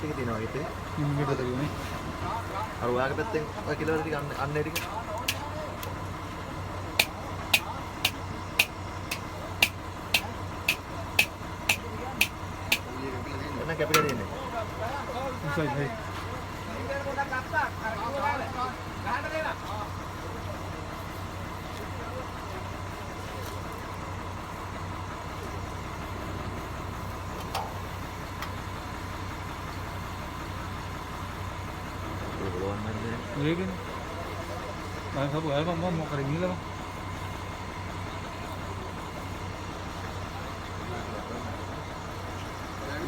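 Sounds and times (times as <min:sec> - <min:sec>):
vehicle engine idling: 0:00.0 - 0:43.0
sharp ticks: 0:07.0 - 0:12.9
short clicks: 0:07.0 - 0:12.9.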